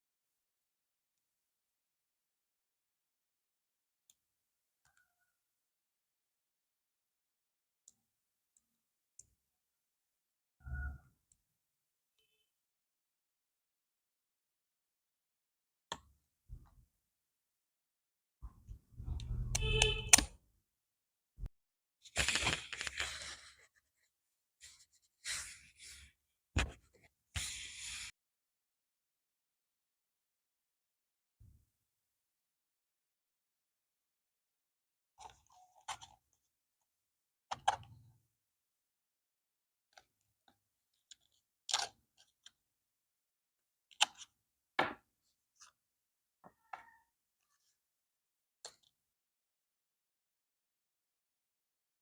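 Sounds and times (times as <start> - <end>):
packaging rustling and scraping: 22.1 - 23.7.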